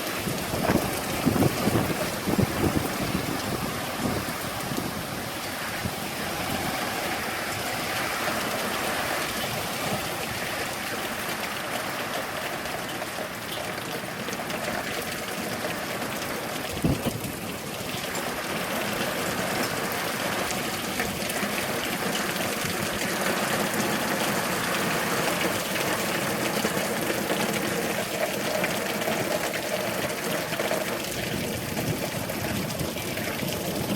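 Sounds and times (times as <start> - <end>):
heavy rain pouring: 0.0 - 33.9.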